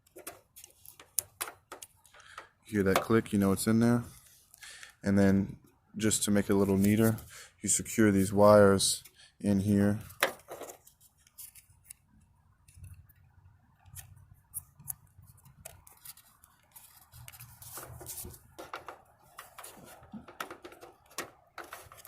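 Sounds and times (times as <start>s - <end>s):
wiring rustling: 0.0s - 4.6s, 9.8s - 22.0s.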